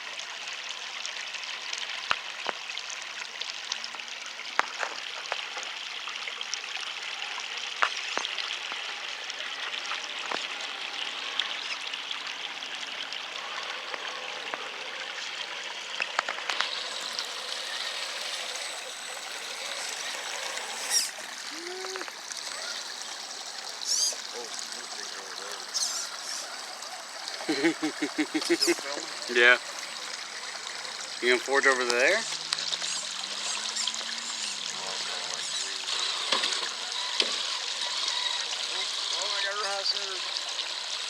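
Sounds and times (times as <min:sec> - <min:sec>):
water running over rocks: 0:00.0 - 0:41.0.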